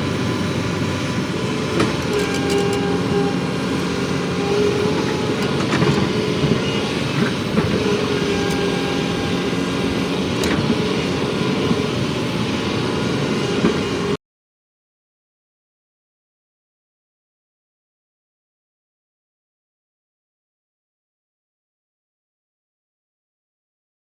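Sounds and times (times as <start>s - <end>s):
excavator diesel engine running: 0.0s - 14.2s.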